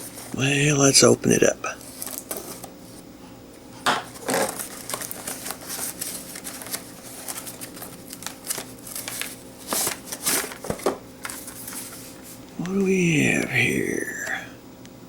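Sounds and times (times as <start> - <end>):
packaging rustling and crinkling: 1.8 - 3.0, 4.0 - 12.5.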